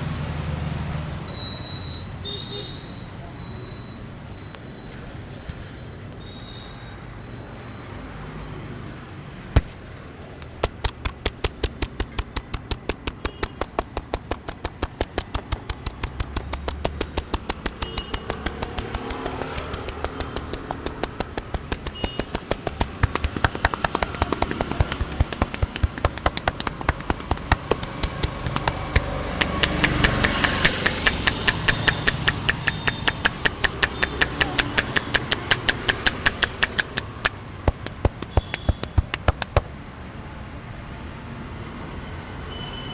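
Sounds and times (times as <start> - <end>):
street traffic: 0.0 - 42.9
hand slaps on head: 9.6 - 9.8, 10.4 - 39.7.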